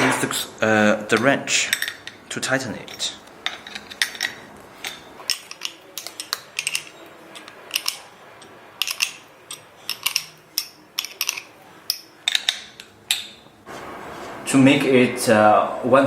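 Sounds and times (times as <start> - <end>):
wrench clinking on metal: 1.1 - 2.2, 2.8 - 13.4.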